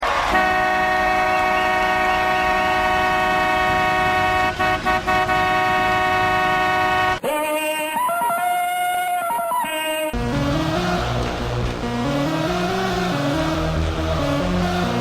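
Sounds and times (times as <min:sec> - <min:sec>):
arena air horn chord: 0:00.2 - 0:07.3.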